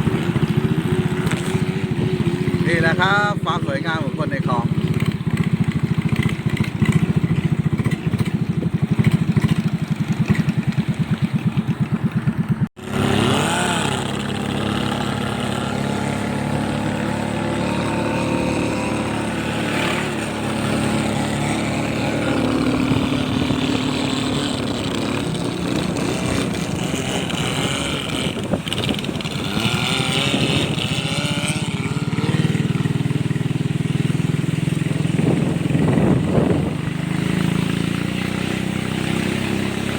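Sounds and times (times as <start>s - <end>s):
small boat engine running: 0.0s - 39.9s.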